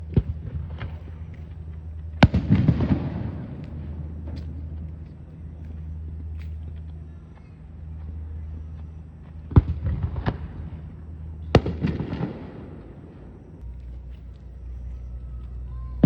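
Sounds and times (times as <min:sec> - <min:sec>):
fireworks crackling: 0:00.0 - 0:06.2, 0:09.5 - 0:14.6.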